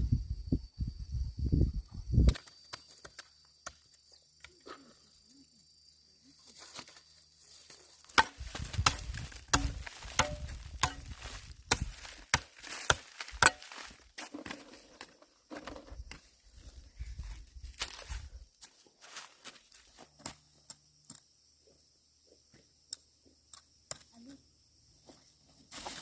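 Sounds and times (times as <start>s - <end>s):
hand tool chopping blows: 8.2s - 13.7s.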